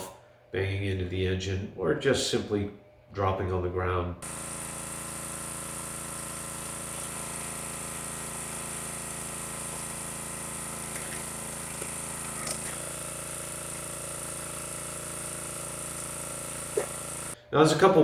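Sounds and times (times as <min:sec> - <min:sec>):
small gasoline engine running: 0:04.2 - 0:17.4.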